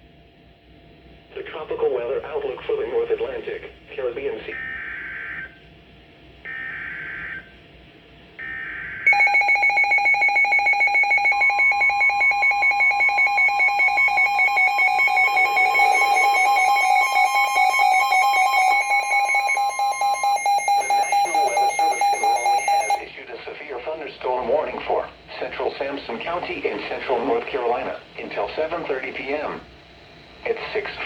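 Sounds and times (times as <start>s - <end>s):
steady warning alarm tone: 4.5s - 5.6s, 6.5s - 7.6s, 8.4s - 23.1s
digital data bursts: 9.1s - 23.0s
fast-pulsing electronic beeping: 9.1s - 23.0s.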